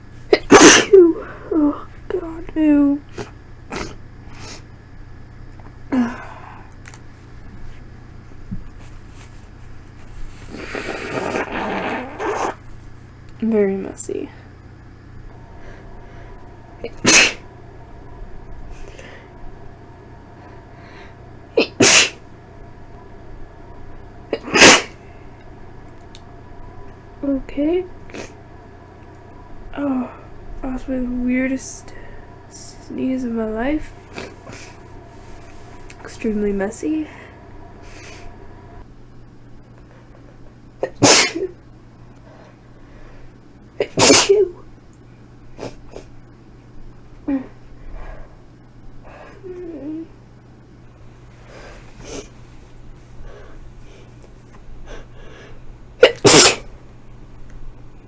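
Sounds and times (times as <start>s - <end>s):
woman sneezing: 0.3s - 1.7s, 10.5s - 12.6s, 16.8s - 17.4s, 21.6s - 22.2s, 24.3s - 25.0s, 40.8s - 41.6s, 43.8s - 44.6s, 56.0s - 56.7s.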